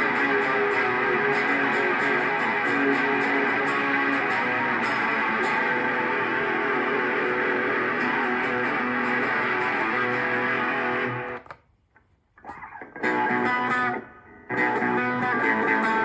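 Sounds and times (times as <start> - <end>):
sustained electric guitar chord: 0.0 - 11.3
strummed electric guitar chords: 0.0 - 11.4, 12.5 - 16.0.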